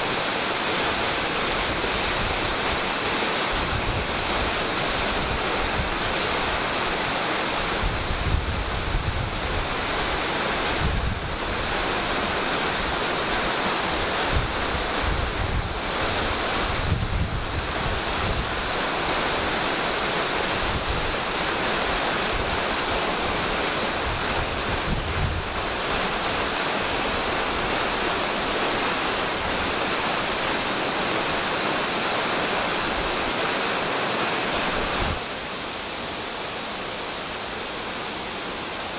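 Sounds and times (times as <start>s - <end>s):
waterfall and stream rushing: 0.0s - 38.9s
wind rumble on microphone: 7.6s - 12.0s, 14.0s - 18.8s, 23.4s - 26.5s.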